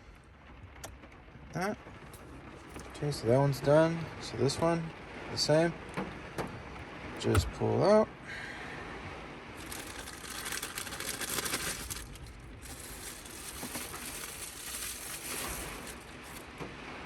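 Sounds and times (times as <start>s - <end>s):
hands rustling plastic knob: 9.6s - 16.5s.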